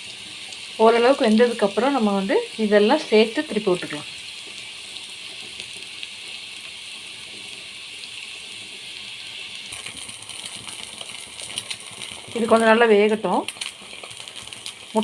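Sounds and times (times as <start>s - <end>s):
egg sizzling in hot oil: 0.0s - 15.0s
oil crackling pops: 9.7s - 12.6s, 13.4s - 15.0s.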